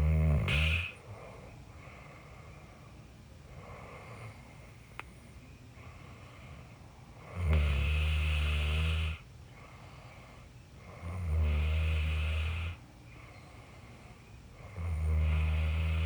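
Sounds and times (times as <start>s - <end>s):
person snoring: 0.0s - 1.0s, 14.7s - 16.0s
faint steady background noise: 0.0s - 16.0s.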